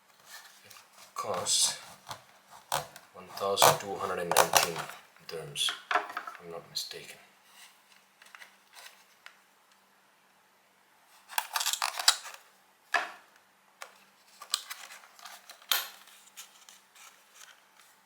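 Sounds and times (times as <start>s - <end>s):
packaging crackling rustle: 13.9s - 18.0s.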